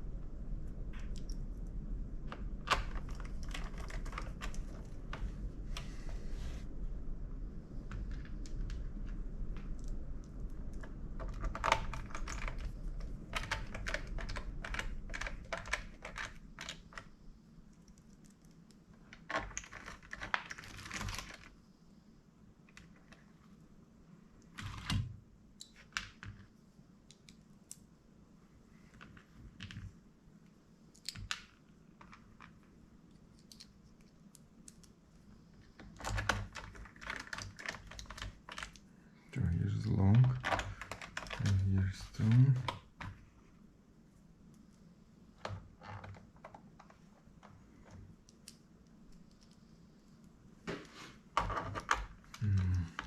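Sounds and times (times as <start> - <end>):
low hum: 0.0 - 18.0
plastic laptop parts clicking: 2.3 - 5.2, 9.6 - 17.1, 17.9 - 21.5, 35.7 - 38.9, 40.3 - 41.6.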